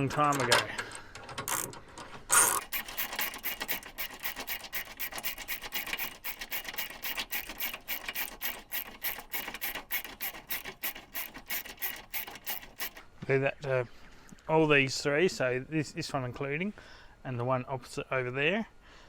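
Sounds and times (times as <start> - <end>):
hand tool scraping metal: 1.4 - 13.0.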